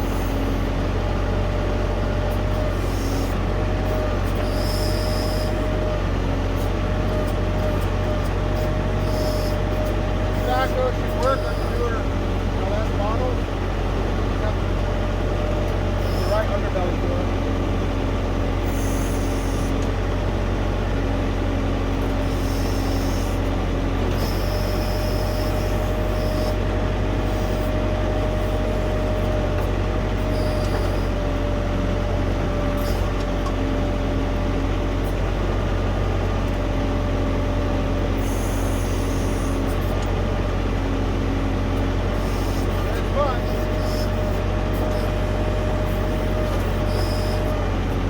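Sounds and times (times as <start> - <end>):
diesel tractor engine running: 0.0 - 48.0
thin steady whine: 7.2 - 13.4, 15.6 - 17.2, 42.1 - 48.0.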